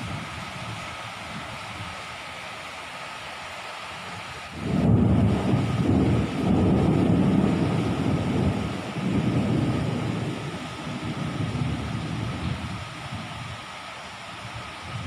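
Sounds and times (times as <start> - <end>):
steady rain hiss: 0.0 - 15.0
deep rolling thunder: 4.6 - 12.5.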